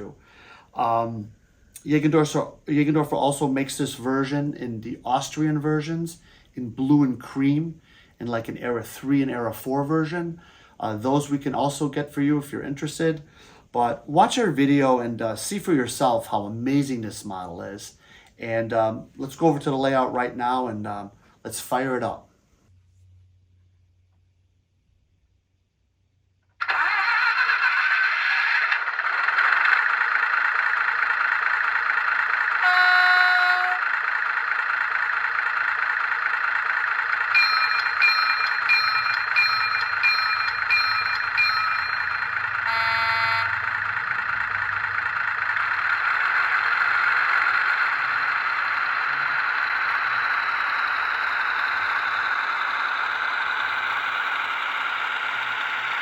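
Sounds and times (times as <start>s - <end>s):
model diesel engine sound: 26.5s - 56.0s
horn toots: 32.6s - 33.8s, 42.6s - 43.9s.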